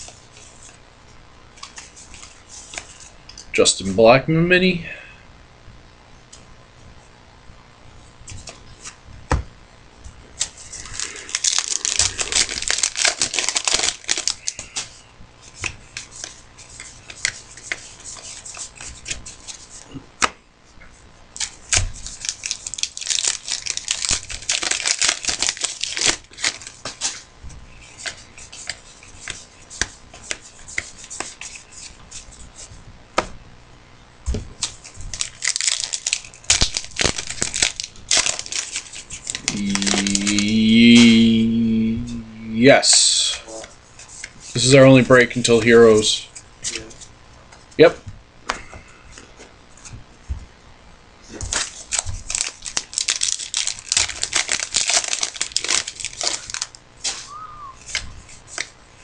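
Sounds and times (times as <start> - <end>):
cards flicking and rustling: 1.5 - 3.5, 8.2 - 9.4, 10.4 - 20.4, 21.4 - 33.4, 34.3 - 41.2, 43.2 - 44.7, 51.3 - 58.8
foil wrappers tearing and crinkling: 10.4 - 15.0, 21.4 - 32.0, 34.6 - 41.2, 51.3 - 58.7.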